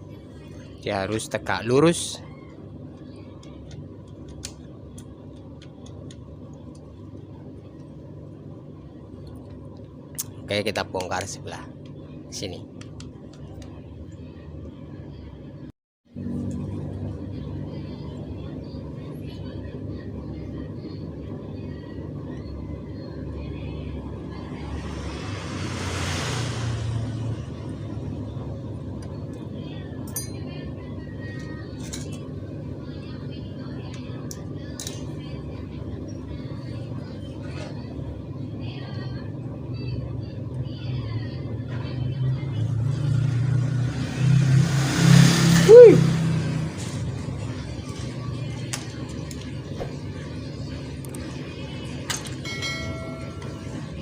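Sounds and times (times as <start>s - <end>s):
low background hum: 0.0s - 54.0s
low traffic rumble: 0.0s - 54.0s
vehicle passing whoosh: 24.5s - 28.1s, 43.1s - 46.8s.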